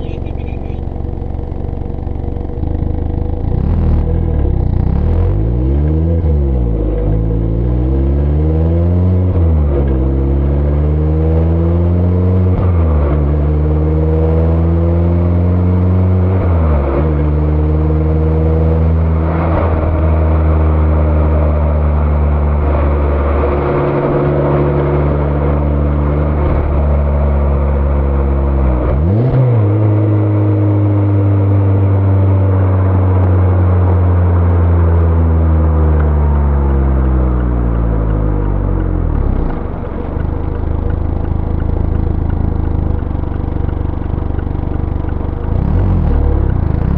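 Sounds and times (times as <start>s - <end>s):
car engine revving through gears: 0.0s - 46.9s.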